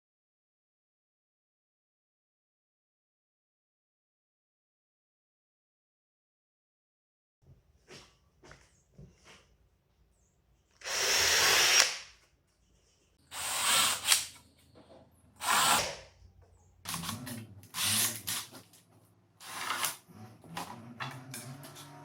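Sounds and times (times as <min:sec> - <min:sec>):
power drill bursts: 0:10.8 - 0:12.1.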